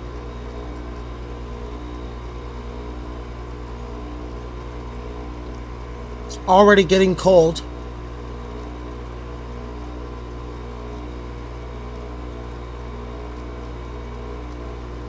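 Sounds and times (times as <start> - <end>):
air conditioner humming: 6.3 - 7.6.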